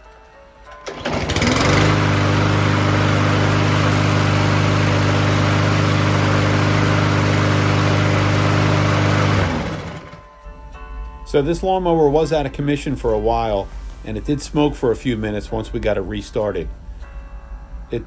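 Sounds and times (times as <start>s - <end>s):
lawn mower engine running: 0.8s - 10.3s.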